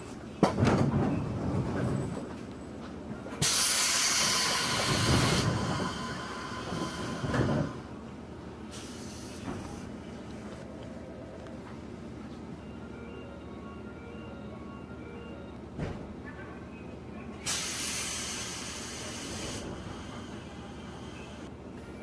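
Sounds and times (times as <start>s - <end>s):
train interior rumble: 0.0s - 22.0s.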